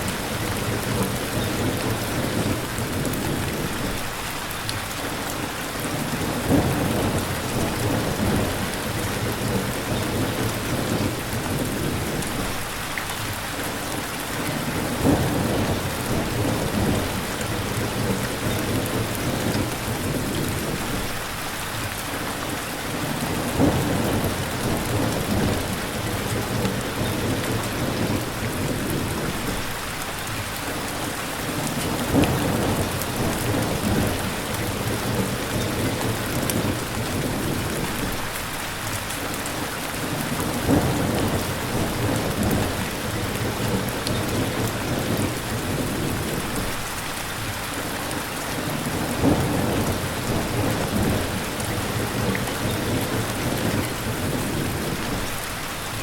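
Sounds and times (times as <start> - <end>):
steady rain falling: 0.0 - 56.0
thunder rumbling: 6.0 - 12.6, 14.6 - 21.2, 22.9 - 29.7, 31.5 - 38.3, 40.1 - 46.9, 48.6 - 56.0.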